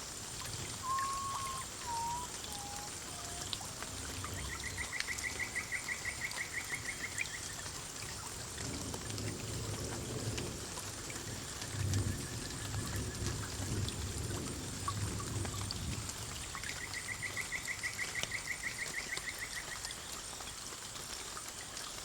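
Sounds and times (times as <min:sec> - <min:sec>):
water trickling and pouring: 0:00.0 - 0:22.0
high chirps: 0:00.8 - 0:03.4.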